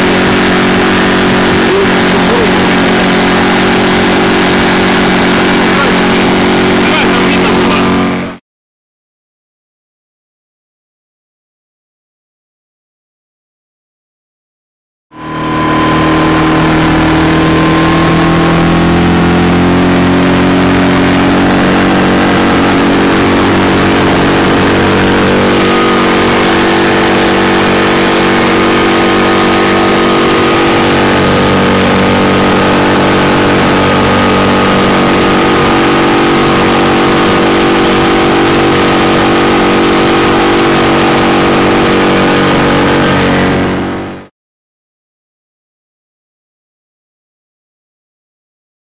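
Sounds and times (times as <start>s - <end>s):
outboard motor at high throttle: 0.0s - 8.4s, 15.2s - 44.3s.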